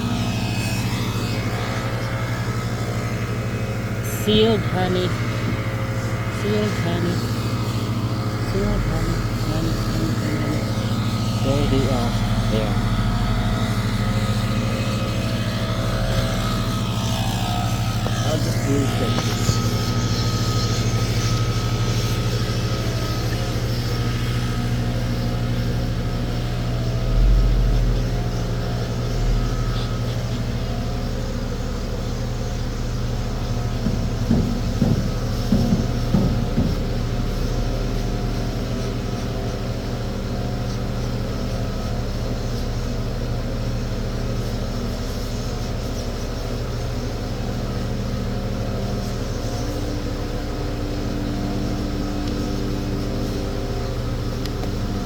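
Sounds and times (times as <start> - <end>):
engine droning: 0.0 - 55.0
dull thumps: 33.2 - 37.7
knocks: 33.7 - 37.4.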